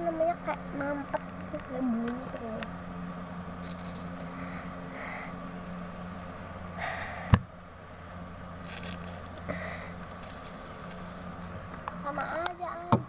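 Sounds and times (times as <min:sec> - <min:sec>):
steady low hum: 0:00.0 - 0:13.0
nasal breaths: 0:03.7 - 0:07.4, 0:08.6 - 0:11.6.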